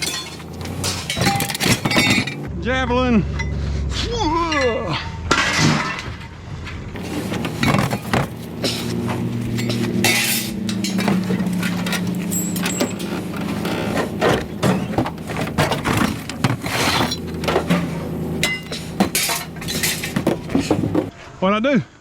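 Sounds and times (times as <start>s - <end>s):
scrap metal clanking: 0.0s - 2.5s, 4.5s - 21.1s
low engine hum: 6.9s - 21.1s.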